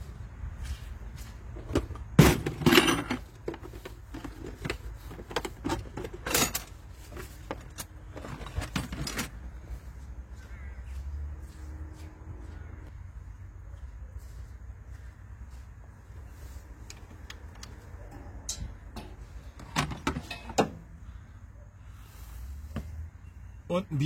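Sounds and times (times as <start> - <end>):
metal parts clanking and rattling: 1.7 - 9.3, 18.0 - 20.9.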